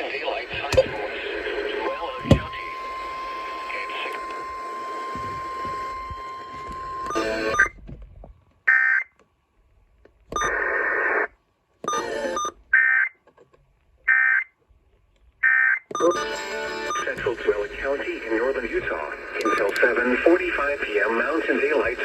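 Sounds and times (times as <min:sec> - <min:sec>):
harsh electronic data bursts: 0:00.0 - 0:07.7.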